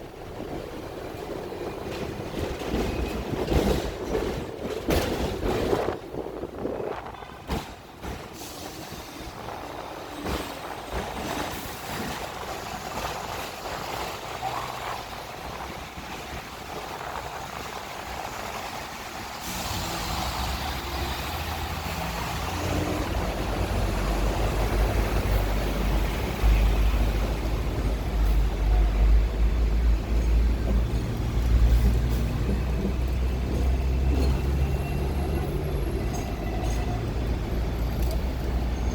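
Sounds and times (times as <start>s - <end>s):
electric tram moving: 0.0s - 38.9s
road traffic: 0.0s - 38.9s
deep rumble of heavy engine: 14.2s - 38.9s.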